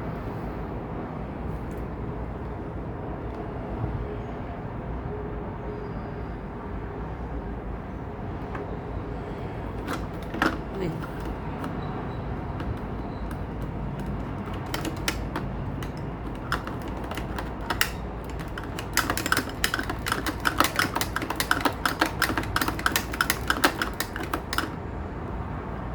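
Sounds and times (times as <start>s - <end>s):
plastic toy clicks and taps: 9.8s - 11.8s, 12.6s - 24.8s.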